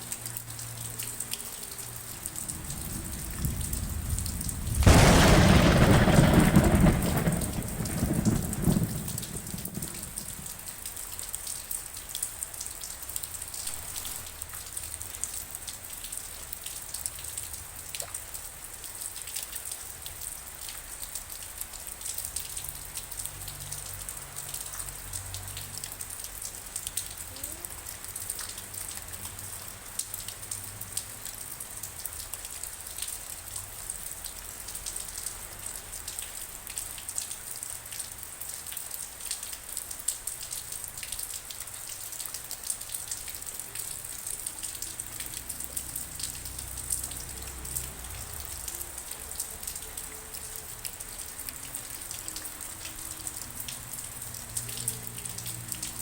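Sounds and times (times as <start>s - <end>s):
rain drops ticking on surfaces: 0.0s - 56.0s
thunder rumble: 1.7s - 10.9s.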